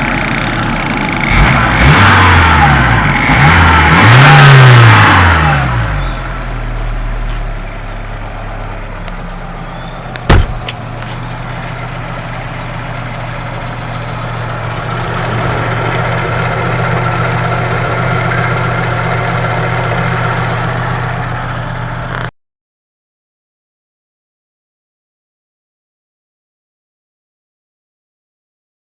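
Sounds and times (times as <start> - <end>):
car engine idling: 0.0 - 1.8, 5.8 - 22.3
sharp loud knock: 10.3 - 10.8.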